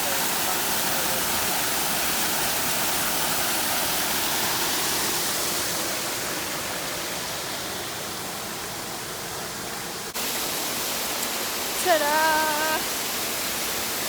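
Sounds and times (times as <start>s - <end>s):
small waterfall rushing: 0.0s - 14.0s.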